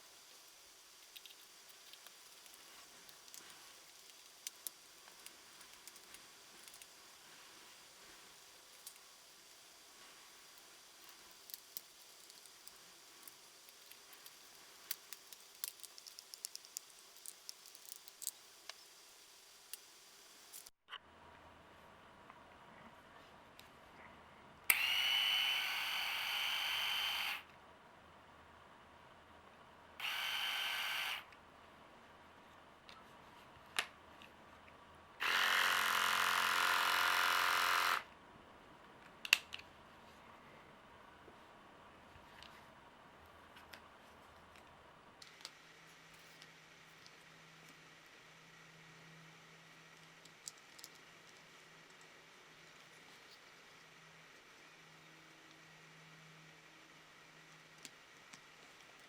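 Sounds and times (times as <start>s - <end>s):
low steady hiss: 0.0s - 35.3s, 38.1s - 59.0s
electric shaver running: 24.7s - 27.4s, 30.0s - 31.3s, 35.2s - 38.1s
small clicks and taps: 50.2s - 52.1s.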